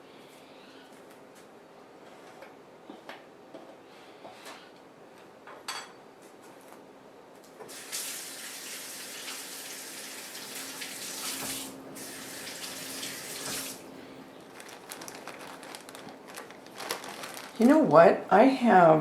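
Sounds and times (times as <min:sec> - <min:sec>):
tap water running into sink: 0:07.7 - 0:13.8.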